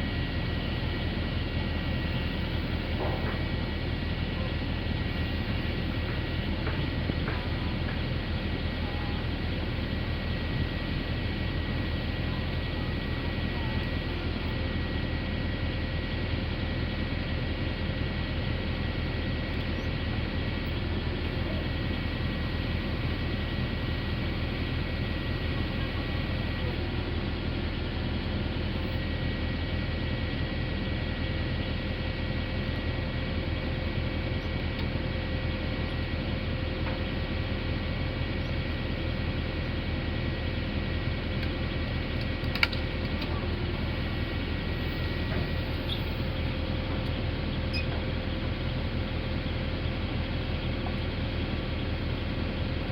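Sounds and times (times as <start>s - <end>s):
diesel engine rumble: 0.0s - 52.9s
hydraulic whine: 42.9s - 52.9s.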